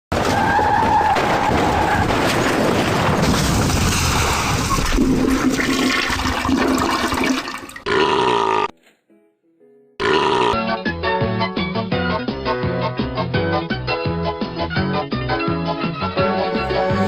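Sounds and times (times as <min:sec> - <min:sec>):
toilet flushing: 0:04.1 - 0:07.9.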